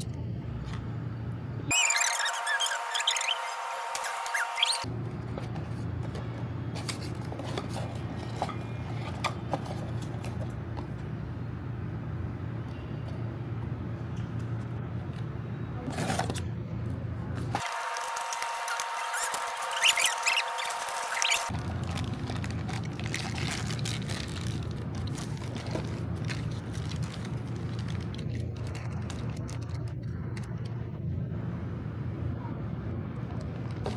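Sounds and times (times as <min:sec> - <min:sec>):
short squeaks: 0:01.7 - 0:04.8, 0:17.7 - 0:21.5
steady high tone: 0:01.7 - 0:04.8
packaging clicks and scrapes: 0:01.7 - 0:11.1, 0:15.8 - 0:16.5, 0:17.4 - 0:30.6.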